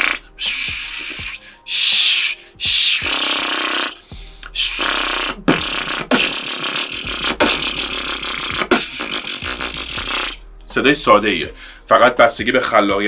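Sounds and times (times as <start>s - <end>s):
beatboxing mouth beats: 0.0s - 10.4s
hissing mouth sounds: 0.0s - 10.4s.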